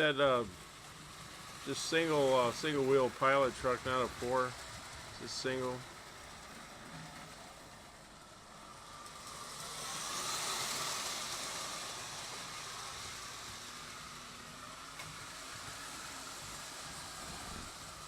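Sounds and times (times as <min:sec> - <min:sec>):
toy train rumbling and rattling: 0:00.0 - 0:18.0.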